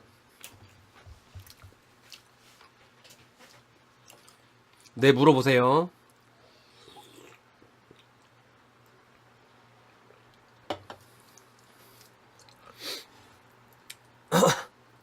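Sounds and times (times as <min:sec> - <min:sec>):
noodles being chewed: 0:00.3 - 0:05.0.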